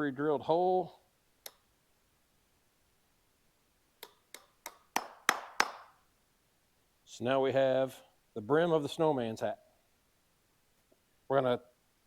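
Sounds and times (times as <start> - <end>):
hammer driving nail into wood: 4.0 - 5.9.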